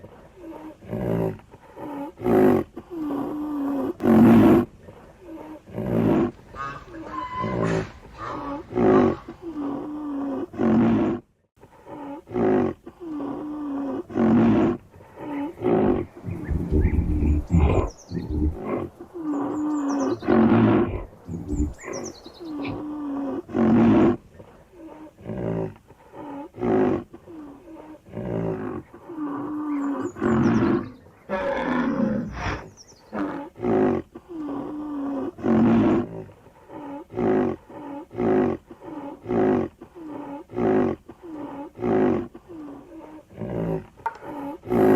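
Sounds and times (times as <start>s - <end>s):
rhinoceros calling: 1.7s - 11.0s, 11.8s - 44.9s
bird chirps: 16.2s - 18.6s, 19.2s - 20.4s, 21.2s - 22.8s.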